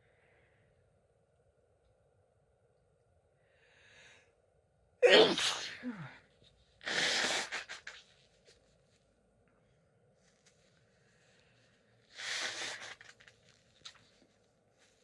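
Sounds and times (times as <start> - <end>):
forceful burst of air through nose: 5.0 - 5.7, 6.8 - 8.0, 12.1 - 13.2
woman sneezing: 5.0 - 6.2.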